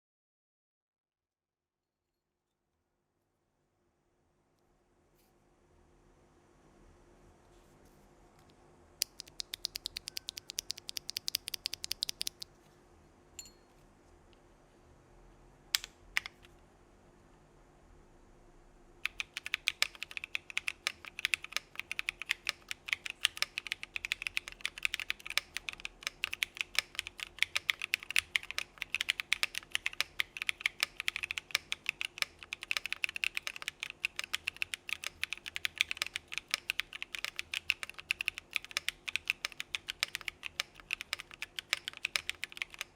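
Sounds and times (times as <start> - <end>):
mechanical keyboard typing: 9.0 - 12.5, 15.8 - 16.5, 19.0 - 42.9.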